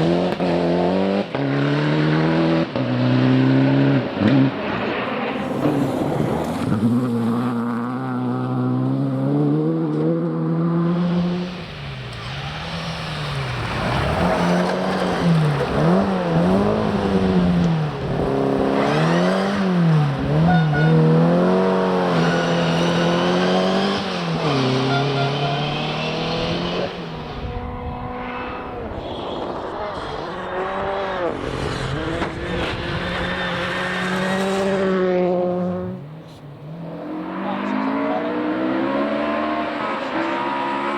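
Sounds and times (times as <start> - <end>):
rally car engine revving: 0.0 - 40.9.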